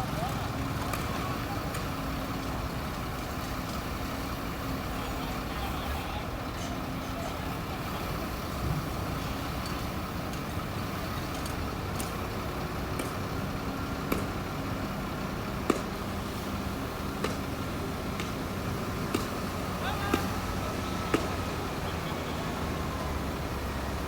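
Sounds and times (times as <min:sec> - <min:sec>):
bulldozer diesel engine: 0:00.0 - 0:24.0.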